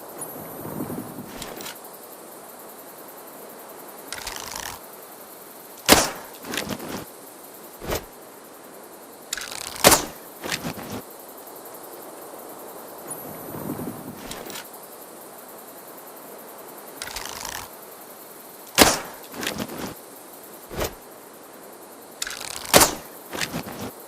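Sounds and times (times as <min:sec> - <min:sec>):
bow string snapping: 0:04.2 - 0:04.8, 0:05.9 - 0:07.0, 0:09.3 - 0:11.0, 0:17.0 - 0:17.7, 0:18.8 - 0:20.0, 0:22.2 - 0:23.9
short rustle: 0:05.9 - 0:07.1, 0:09.4 - 0:11.0, 0:18.8 - 0:20.0, 0:20.7 - 0:21.0, 0:22.2 - 0:24.0.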